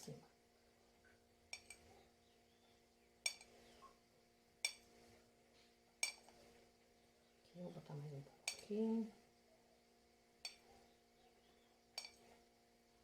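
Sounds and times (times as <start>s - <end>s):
faint steady hum: 0.0s - 13.0s
spoon clinking against tins: 1.5s - 1.9s, 3.2s - 3.6s, 6.0s - 6.3s, 8.4s - 8.7s, 10.4s - 10.7s, 12.0s - 12.3s.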